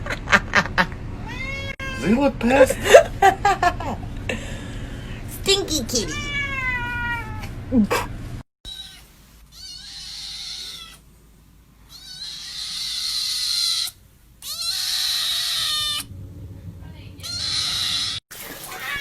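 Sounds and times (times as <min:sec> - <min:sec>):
cat yowling: 0:06.0 - 0:07.5, 0:08.7 - 0:11.0, 0:11.9 - 0:16.1, 0:17.2 - 0:19.0.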